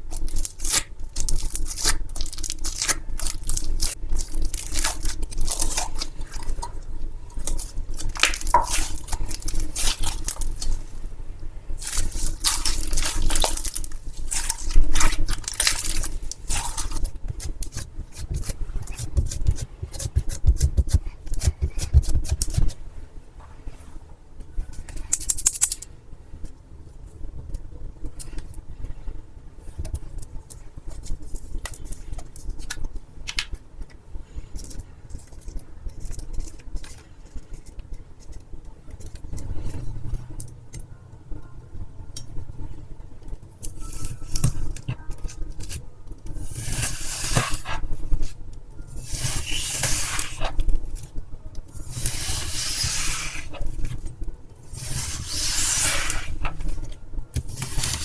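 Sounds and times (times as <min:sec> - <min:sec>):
floral foam crackling: 0:00.0 - 0:19.2, 0:46.4 - 0:58.0
gritty crunching strokes: 0:54.6 - 0:56.8.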